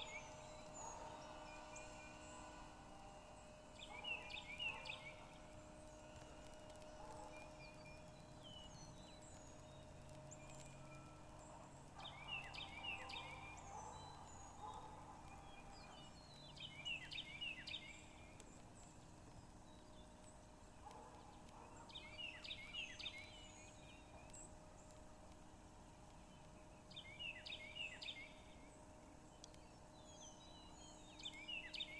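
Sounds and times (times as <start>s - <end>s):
songbird chirping: 0.0s - 25.0s
faint steady hum: 0.0s - 31.9s.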